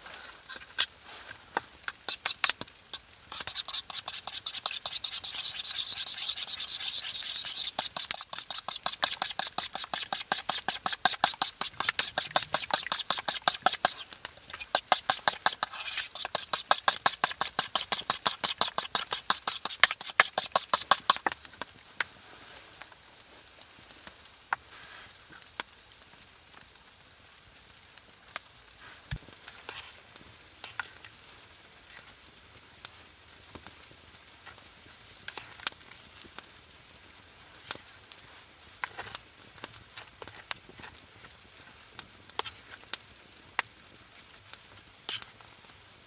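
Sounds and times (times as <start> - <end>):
stirring strokes in a pot: 0.0 - 22.6, 28.8 - 31.1, 44.3 - 45.7
faint sizzle with crackles: 0.0 - 46.0.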